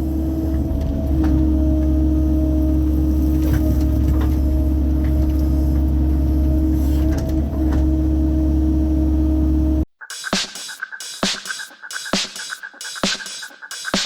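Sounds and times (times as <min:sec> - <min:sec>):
diesel engine running: 0:00.0 - 0:09.8
electronic music: 0:10.0 - 0:14.0.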